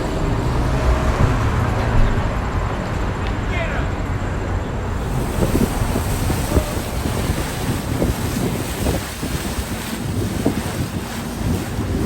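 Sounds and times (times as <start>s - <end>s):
boat moving over water: 0.0s - 12.0s
wind buffeting microphone: 4.3s - 12.0s.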